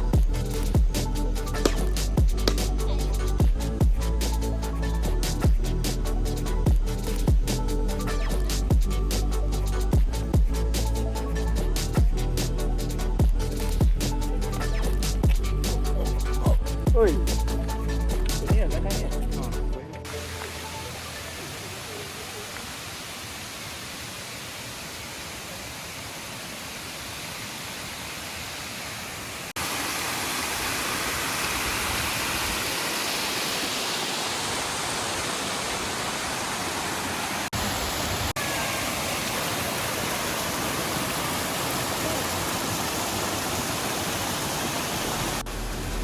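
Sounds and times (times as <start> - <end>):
waterfall rushing: 20.1 - 46.0.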